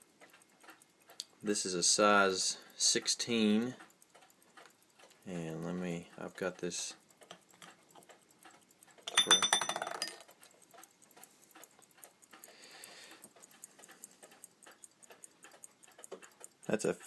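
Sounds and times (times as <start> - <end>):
small clicks and rustles: 6.0 - 17.0
pocket watch metal clinking: 7.2 - 12.3.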